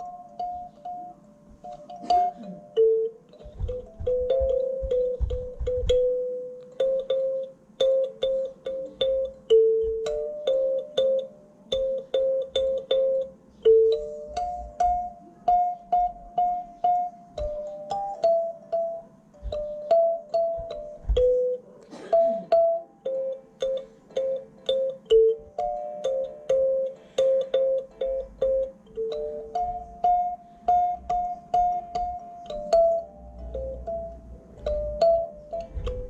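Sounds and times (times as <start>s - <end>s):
kalimba melody: 0.0s - 36.0s
dull knocks: 3.4s - 6.1s.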